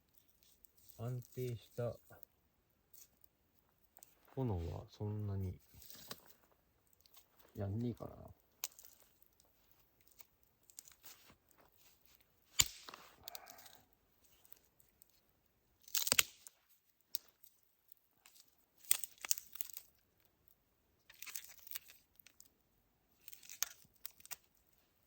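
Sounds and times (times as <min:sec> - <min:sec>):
firewood crunching and rustling: 0:03.9 - 0:13.8
firewood cracking: 0:05.6 - 0:15.2, 0:15.8 - 0:17.6, 0:18.2 - 0:20.1, 0:21.1 - 0:22.5, 0:23.2 - 0:24.5.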